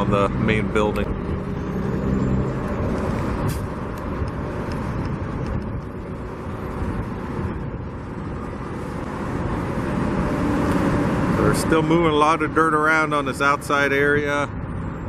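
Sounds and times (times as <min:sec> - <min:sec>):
freeway traffic rushing: 0:00.0 - 0:15.0
wind buffeting microphone: 0:01.1 - 0:11.4.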